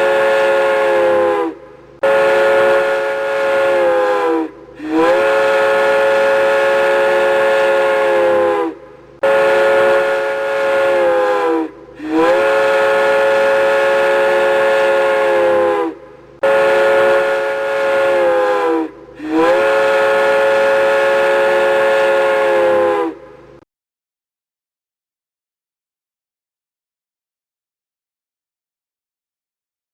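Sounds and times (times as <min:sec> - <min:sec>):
locomotive horn blasts: 0:00.0 - 0:23.4.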